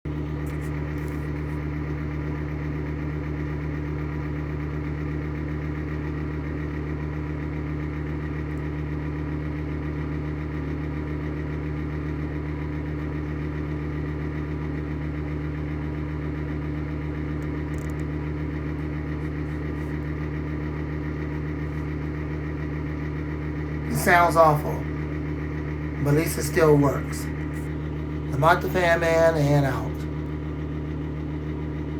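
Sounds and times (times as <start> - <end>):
exhaust fan humming and rattling: 0.1 - 31.9.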